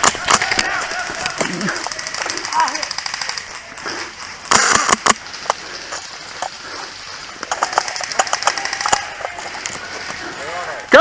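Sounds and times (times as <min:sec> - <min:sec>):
small clicks and snaps: 0:07.3 - 0:10.2.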